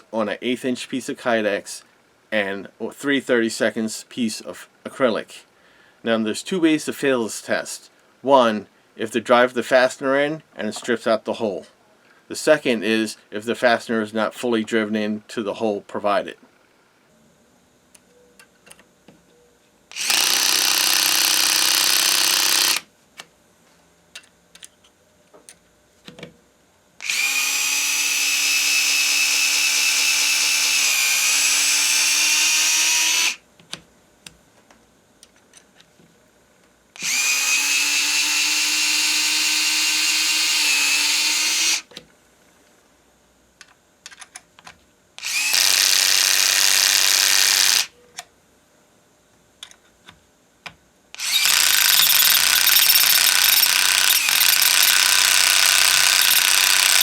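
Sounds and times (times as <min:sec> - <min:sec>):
electric screwdriver whine: 0:19.9 - 0:22.8, 0:27.0 - 0:33.4, 0:37.0 - 0:41.9, 0:45.2 - 0:47.9, 0:51.2 - 0:57.0.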